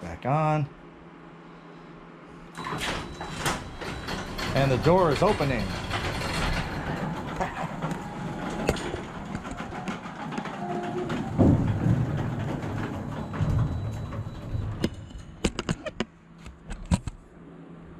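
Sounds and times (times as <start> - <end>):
garage door opener humming: 2.3 - 16.0.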